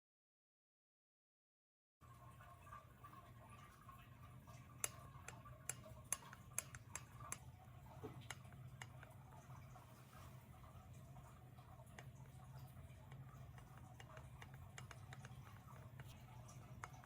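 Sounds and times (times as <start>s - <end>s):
faint steady hum: 2.0s - 17.0s.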